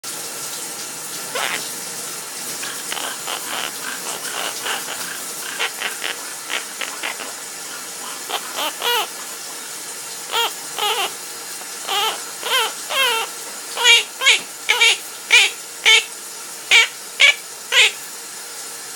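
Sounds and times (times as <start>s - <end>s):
shower running: 0.0s - 18.9s
parrot whistling: 1.3s - 1.7s, 2.6s - 9.4s, 10.3s - 11.2s, 11.8s - 16.1s, 16.7s - 18.0s.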